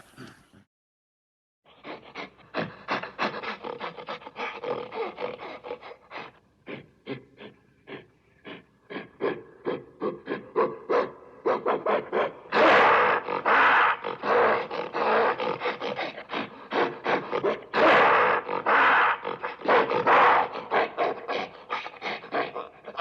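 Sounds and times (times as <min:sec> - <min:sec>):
ape or monkey calls: 0:12.5 - 0:20.7.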